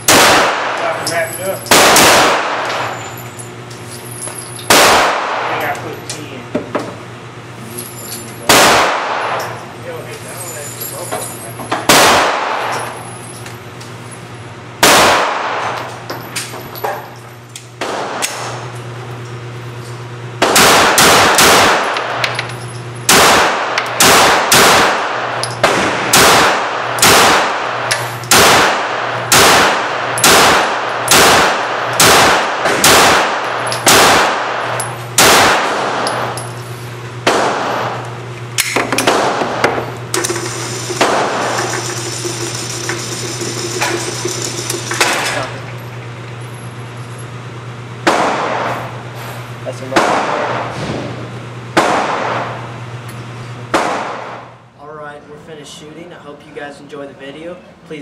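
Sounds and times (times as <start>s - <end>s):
pistol shots echoing: 0.0s - 1.0s, 1.7s - 2.9s, 4.7s - 5.7s, 8.5s - 9.4s, 11.9s - 12.8s, 14.8s - 15.8s, 20.4s - 22.2s, 23.1s - 36.4s, 48.0s - 48.8s, 49.9s - 50.7s, 51.7s - 52.6s
ventilation hum: 0.0s - 58.0s.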